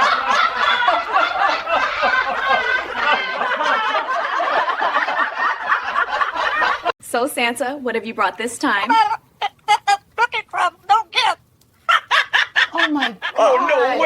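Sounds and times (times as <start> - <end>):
people laughing: 0.0 - 6.9, 11.9 - 14.0.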